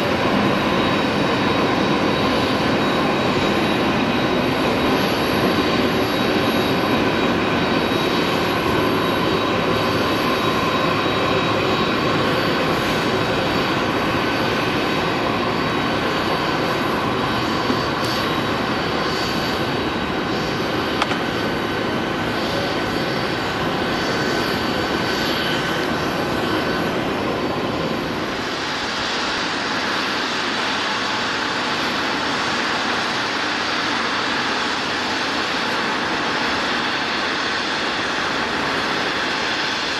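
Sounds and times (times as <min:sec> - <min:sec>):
jet engines rushing: 0:00.0 - 0:39.9.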